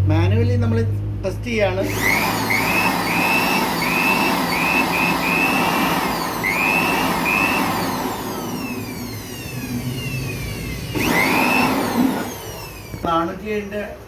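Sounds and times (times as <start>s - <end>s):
turbocharger whistling whine: 1.9s - 13.1s.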